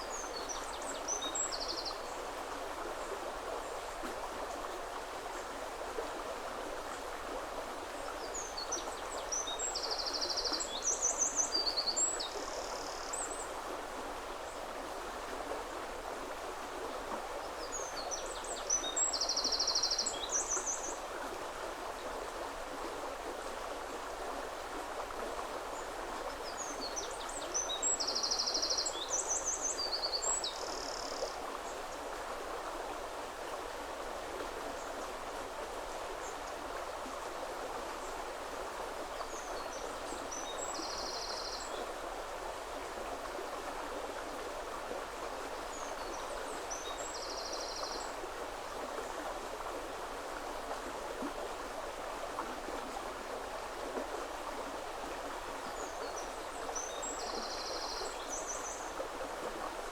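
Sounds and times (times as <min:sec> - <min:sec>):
river flowing: 0:00.0 - 0:59.9.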